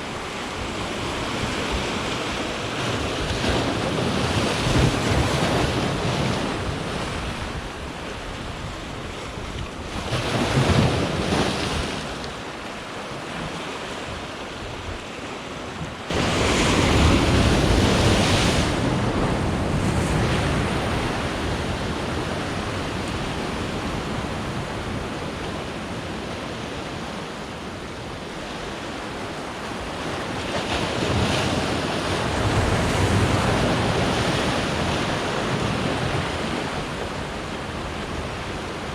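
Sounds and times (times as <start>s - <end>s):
surf washing against rocks: 0.0s - 38.9s
wind buffeting microphone: 16.1s - 25.5s.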